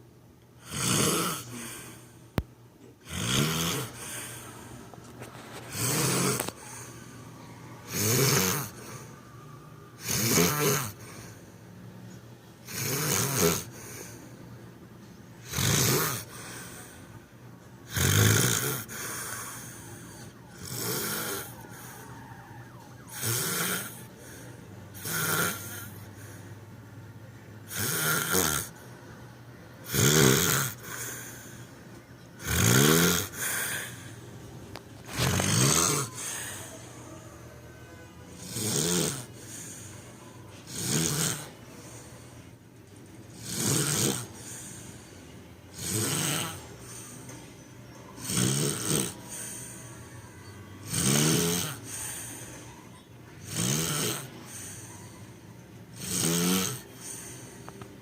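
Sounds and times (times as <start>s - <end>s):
snoring: 0.6s - 2.1s, 3.0s - 4.5s, 5.5s - 7.2s, 7.8s - 9.2s, 10.0s - 11.4s, 12.6s - 14.1s, 15.4s - 17.2s, 17.8s - 26.4s, 27.7s - 28.8s, 29.8s - 31.7s, 32.4s - 34.2s, 35.1s - 37.2s, 38.4s - 40.0s, 40.6s - 42.6s, 43.3s - 47.4s, 48.2s - 52.7s, 53.4s - 55.2s, 55.9s - 57.7s.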